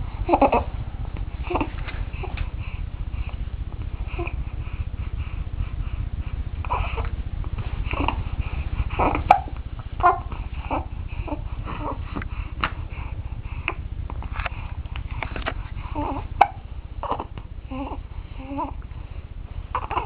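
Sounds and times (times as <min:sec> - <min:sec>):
steady low rumble: 0:00.0 - 0:20.0
baby grunting: 0:17.0 - 0:18.8.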